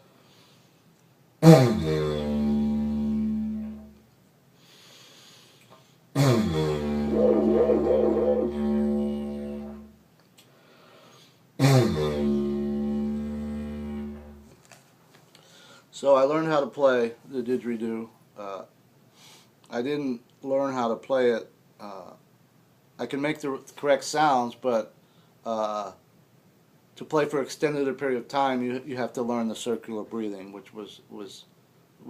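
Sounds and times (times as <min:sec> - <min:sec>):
didgeridoo drone: 0:01.5 - 0:03.9, 0:06.2 - 0:10.0, 0:11.6 - 0:14.5
player drawing breath: 0:04.6 - 0:06.0, 0:10.5 - 0:11.4, 0:15.3 - 0:15.9.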